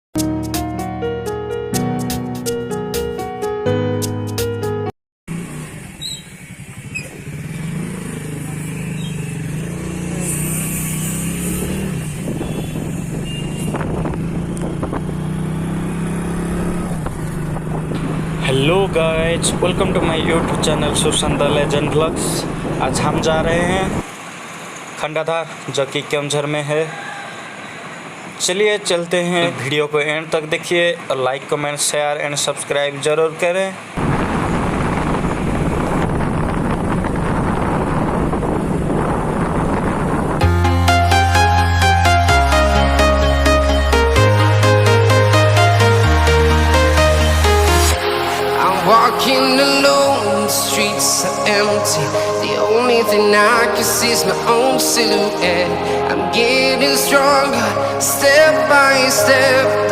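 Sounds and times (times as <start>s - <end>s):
vehicle engine droning: 5.3s - 59.9s
wind buffeting microphone: 11.8s - 15.4s, 16.6s - 24.1s, 34.0s - 40.5s.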